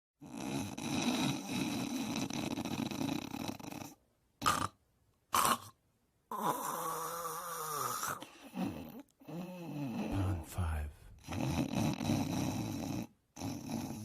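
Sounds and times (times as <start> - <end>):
person snoring: 6.3 - 14.0.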